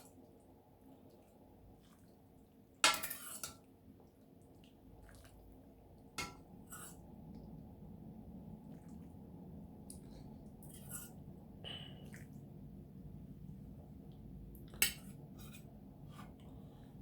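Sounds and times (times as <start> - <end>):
dishes clinking: 2.8 - 3.6.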